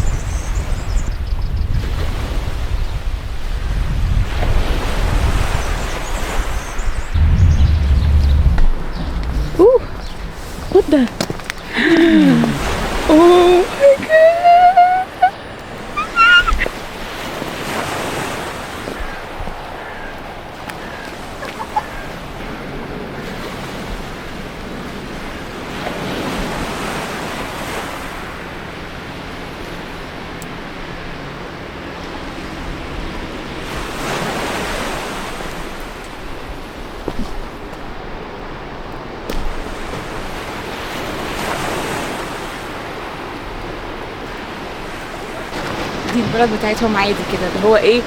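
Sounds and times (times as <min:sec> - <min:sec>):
wind on microphone: 0:00.0 - 0:27.0
water rushing: 0:04.4 - 0:48.0.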